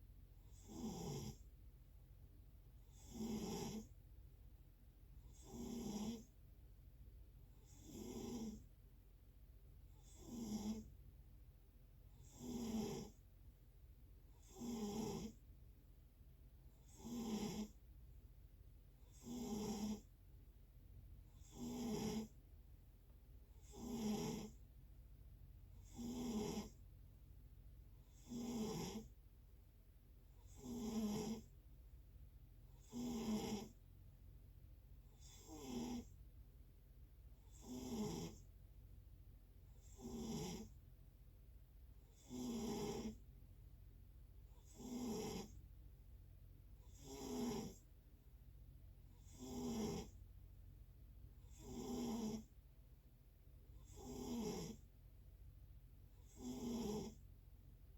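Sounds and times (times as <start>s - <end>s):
person snoring: 5.4s - 6.3s, 12.2s - 13.2s, 25.8s - 26.8s, 49.3s - 50.1s, 56.3s - 57.2s.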